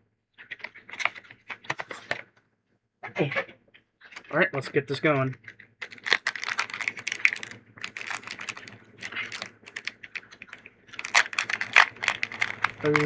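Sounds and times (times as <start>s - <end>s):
foil pack crinkling: 5.8s - 13.0s.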